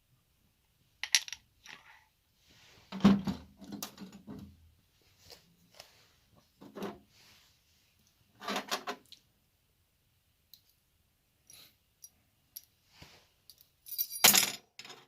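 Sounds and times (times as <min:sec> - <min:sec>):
metal parts clinking and knocking: 0:01.0 - 0:01.9, 0:13.5 - 0:15.0.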